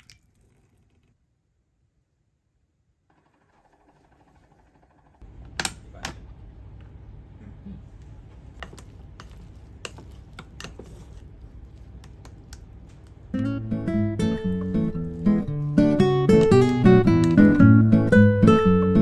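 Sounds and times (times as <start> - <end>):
light clicks and taps: 11.9 - 13.2.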